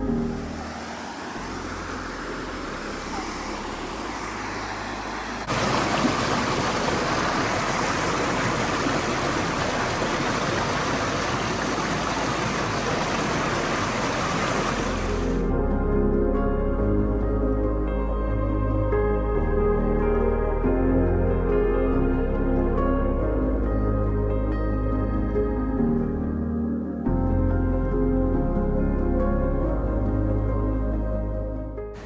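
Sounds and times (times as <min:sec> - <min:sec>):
rushing water: 0:00.0 - 0:15.5.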